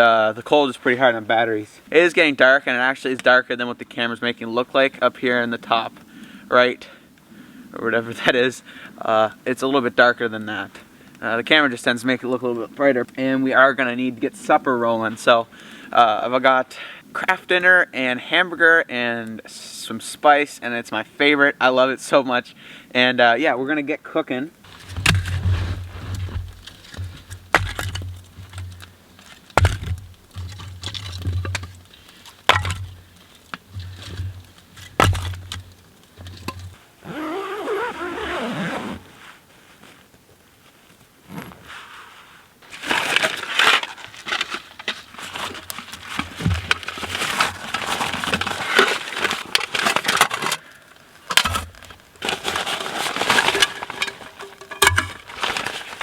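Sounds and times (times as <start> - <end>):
crackling and scraping: 24.6 - 38.3, 42.6 - 56.0
cooking gear knocking and clattering: 24.7 - 36.8, 51.3 - 56.0.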